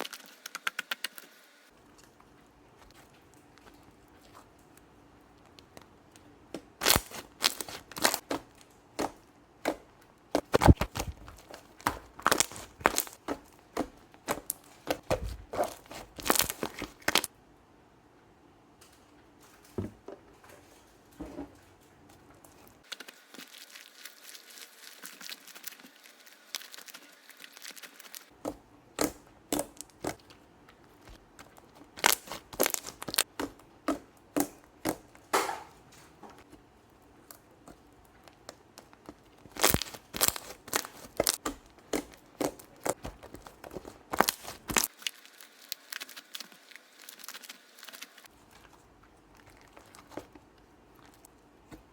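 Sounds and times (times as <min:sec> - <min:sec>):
slime pops and crackles: 0:06.8 - 0:09.1, 0:10.4 - 0:17.3, 0:32.0 - 0:35.0, 0:38.8 - 0:48.1.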